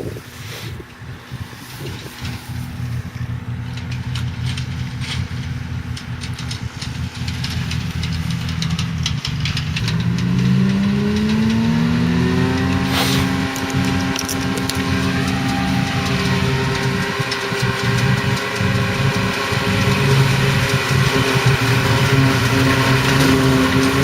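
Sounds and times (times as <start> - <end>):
diesel farm machinery engine revving: 0.0 - 24.0
brief hiss: 12.8 - 13.4.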